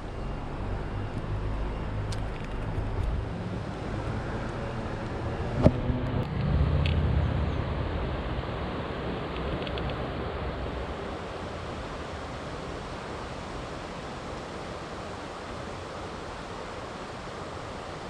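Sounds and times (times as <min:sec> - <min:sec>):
creek water rushing: 0:06.2 - 0:18.0.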